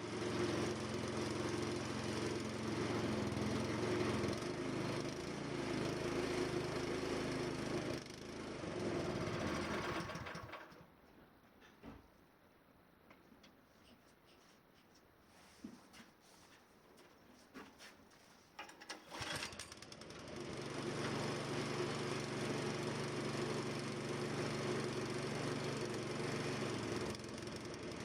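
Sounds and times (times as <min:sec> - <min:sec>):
snowblower engine running: 0:00.0 - 0:10.8, 0:18.8 - 0:28.0.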